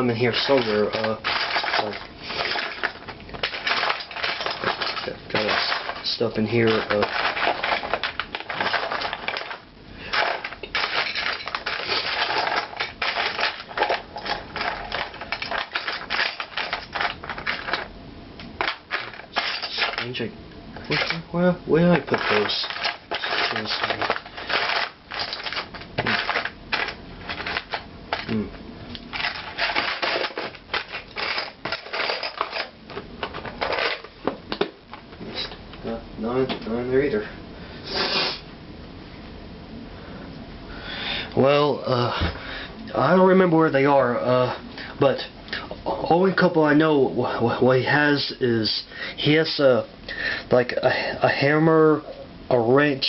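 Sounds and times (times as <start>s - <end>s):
hands rummaging through toy pieces: 0.0s - 17.9s, 18.6s - 20.2s, 20.9s - 21.3s, 21.9s - 28.4s, 29.1s - 34.7s.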